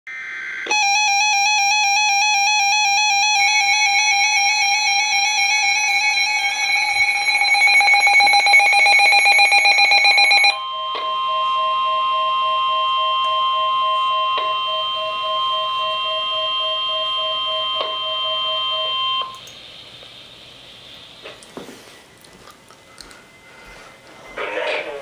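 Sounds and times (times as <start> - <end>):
pulsing electronic alarm tone: 0.1 - 19.4.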